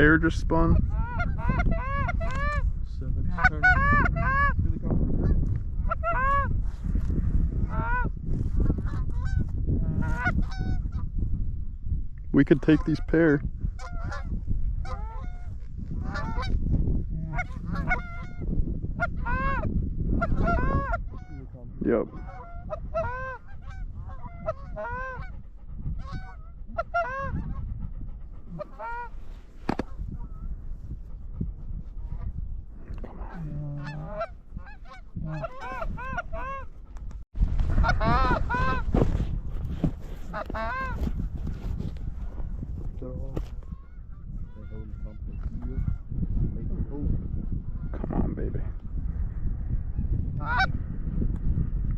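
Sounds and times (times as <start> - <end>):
goose honking: 0.9 - 2.6, 3.3 - 4.5, 5.9 - 6.5, 8.8 - 11.0, 13.8 - 16.6, 17.2 - 21.4, 22.1 - 25.4, 26.0 - 27.7, 28.5 - 30.4, 33.2 - 36.7, 37.8 - 38.9, 40.3 - 41.1.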